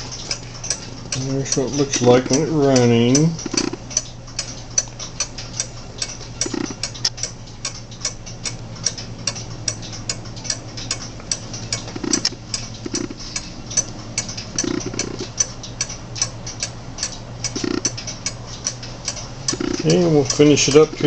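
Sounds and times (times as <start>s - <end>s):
clock ticking: 0.0s - 21.0s.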